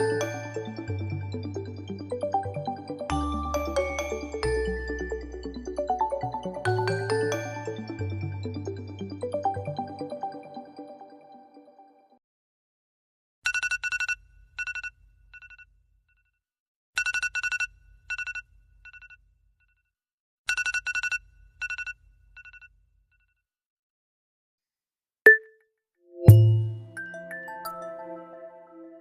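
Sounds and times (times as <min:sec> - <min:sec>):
lower electronic tone: 0:26.2 - 0:27.0
short ding: 0:26.2 - 0:27.0
high-pitched trilling alarm beep: 0:26.3 - 0:26.9.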